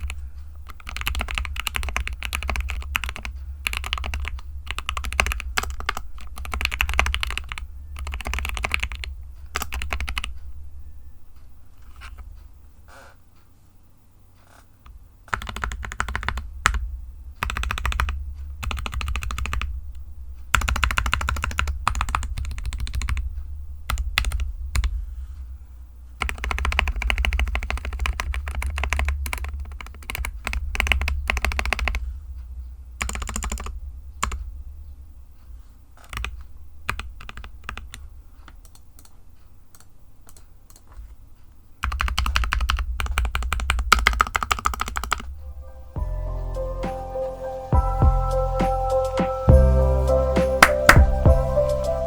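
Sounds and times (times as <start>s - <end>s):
mechanical keyboard typing: 0.0s - 10.4s, 15.2s - 16.8s, 17.4s - 19.7s, 20.5s - 25.0s, 26.2s - 32.0s, 33.0s - 34.4s, 36.0s - 41.1s, 41.8s - 45.3s.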